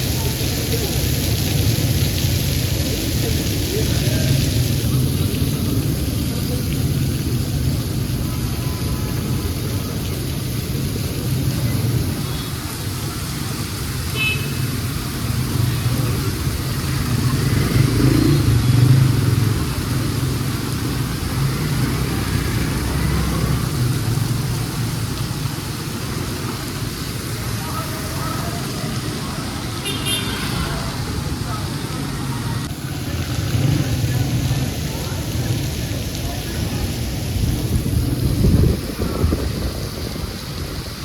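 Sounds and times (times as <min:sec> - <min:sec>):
rain hiss: 0:00.0 - 0:41.0
wet tyres hissing: 0:00.0 - 0:41.0
car and motorcycle engines passing: 0:14.6 - 0:41.0.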